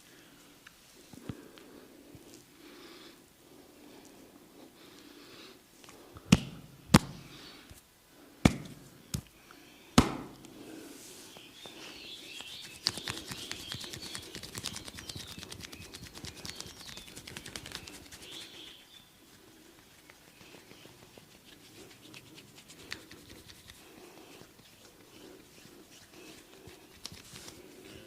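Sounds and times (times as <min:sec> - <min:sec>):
hands slapping head: 0:06.2 - 0:07.3, 0:08.4 - 0:09.3, 0:10.0 - 0:10.6, 0:12.4 - 0:18.0
fast tapping and rubbing on head: 0:12.1 - 0:28.0.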